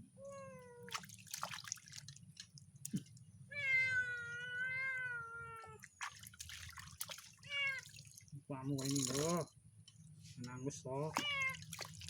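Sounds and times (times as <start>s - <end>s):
cat meowing: 3.5s - 5.8s, 7.4s - 7.9s, 11.1s - 11.7s.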